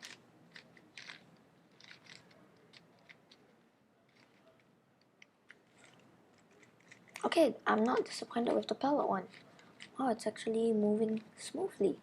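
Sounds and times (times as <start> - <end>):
puzzle cube plastic clicks: 0.0 - 3.5, 4.1 - 10.0.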